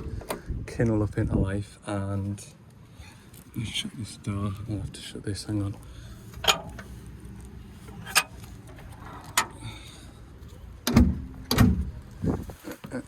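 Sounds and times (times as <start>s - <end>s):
cab door thumping shut: 10.8s - 12.0s.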